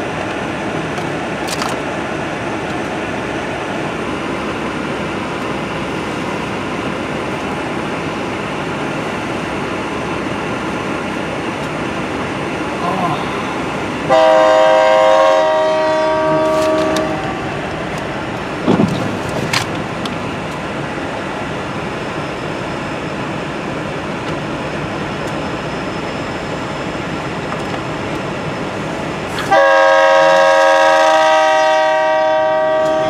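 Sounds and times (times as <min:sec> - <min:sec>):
train rumbling on rails: 0:00.0 - 0:33.0
locomotive air horn chord: 0:14.1 - 0:17.6, 0:29.4 - 0:33.0.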